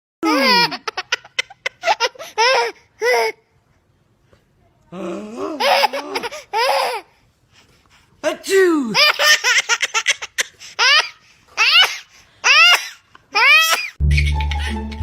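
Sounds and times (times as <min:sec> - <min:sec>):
baby laughing: 0:00.2 - 0:03.4, 0:05.5 - 0:07.1, 0:08.9 - 0:15.0.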